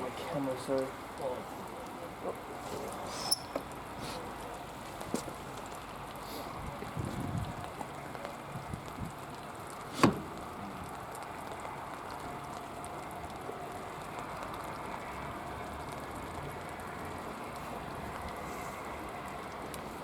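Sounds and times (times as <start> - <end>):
rain falling: 0.0 - 20.0
sharp knock: 9.9 - 10.3.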